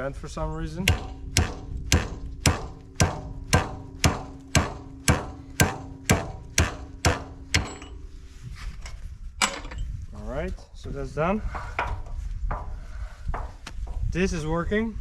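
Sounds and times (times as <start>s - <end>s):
hammer ringing on metal: 0.8s - 8.0s.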